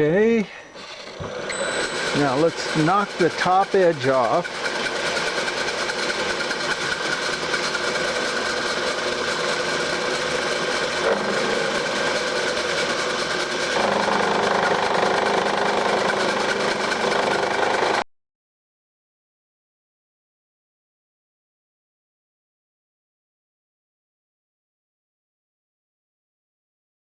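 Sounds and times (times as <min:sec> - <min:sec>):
machine tool cutting metal: 0:00.8 - 0:18.0.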